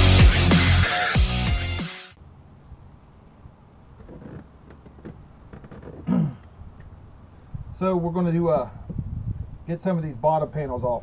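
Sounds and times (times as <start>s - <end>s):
dubstep music with heavy bass: 0.0s - 2.1s.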